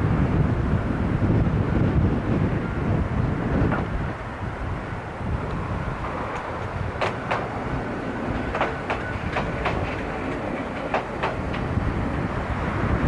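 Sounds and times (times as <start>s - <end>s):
train running rumble: 0.0s - 13.0s
wind noise on microphone: 0.0s - 13.0s
train wheels clicking over rail joints: 6.0s - 12.1s.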